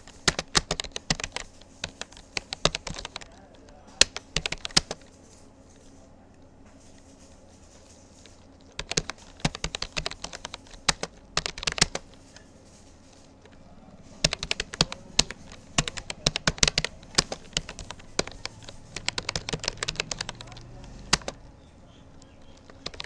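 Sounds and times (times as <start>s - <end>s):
keyboard key clicks: 14.2s - 21.5s, 22.2s - 23.0s.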